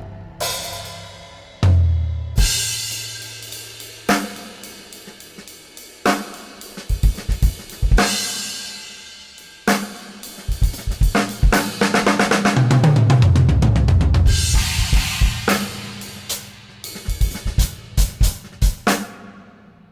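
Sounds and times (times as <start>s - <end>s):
cymbal crash: 0.0s - 6.9s, 14.3s - 19.7s
drum hits: 10.5s - 19.4s.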